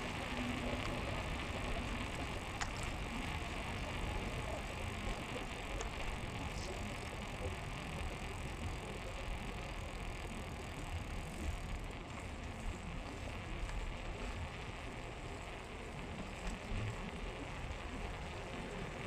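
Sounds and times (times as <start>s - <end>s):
low road rumble: 0.0s - 19.0s.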